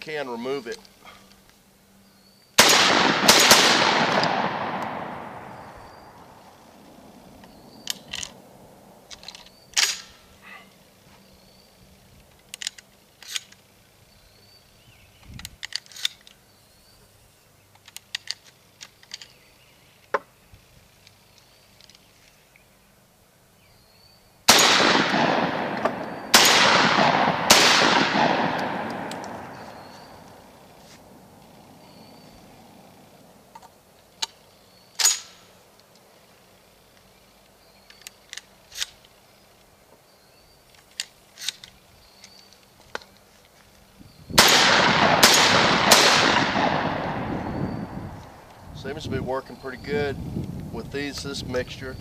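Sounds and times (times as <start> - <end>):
shotgun shots echoing: 2.6 - 6.2, 24.5 - 30.4, 44.4 - 48.0
shotgun handling clicks: 2.6 - 10.2, 12.2 - 13.7, 15.2 - 16.4, 17.6 - 20.2, 24.5 - 30.8, 33.5 - 36.3, 36.9 - 39.7, 40.7 - 43.8, 44.4 - 47.3.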